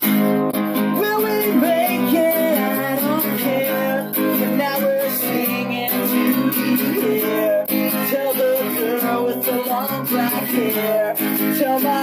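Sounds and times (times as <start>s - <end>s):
person singing: 0.0s - 12.0s
strummed acoustic guitar: 0.0s - 12.0s.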